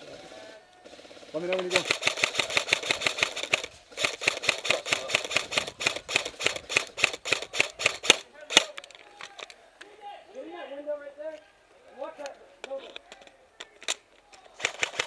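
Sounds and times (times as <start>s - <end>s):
airsoft gun firing: 0.9s - 8.8s, 14.6s - 15.0s.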